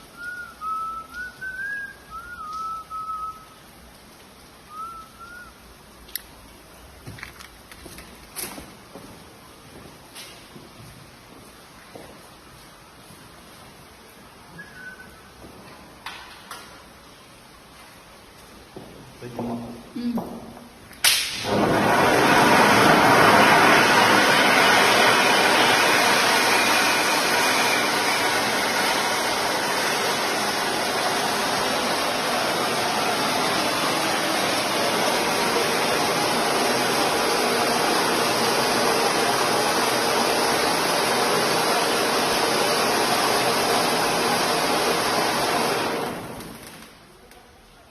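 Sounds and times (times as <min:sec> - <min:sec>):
firework hissing rush: 0:21.1 - 0:46.8.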